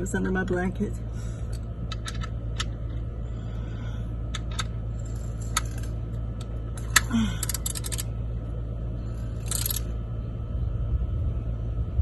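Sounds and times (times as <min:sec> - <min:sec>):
steady low hum: 0:00.0 - 0:12.0
socket wrench clicking: 0:01.5 - 0:02.8, 0:05.4 - 0:08.1, 0:09.4 - 0:09.9.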